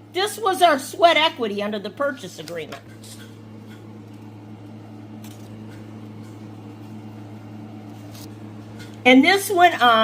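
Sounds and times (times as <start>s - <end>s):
low electrical hum: 0.0s - 10.0s.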